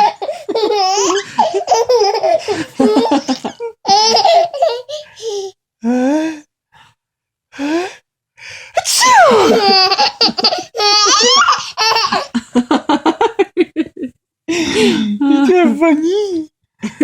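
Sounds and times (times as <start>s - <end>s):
child laughing: 0.0s - 5.5s, 9.2s - 12.4s.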